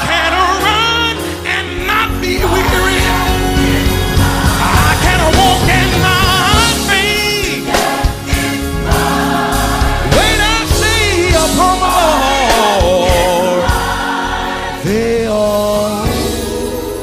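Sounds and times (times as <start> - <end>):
backing vocal harmonies: 0.0 - 17.0
lead voice singing with vibrato: 0.0 - 17.0
drum hits: 2.7 - 11.6.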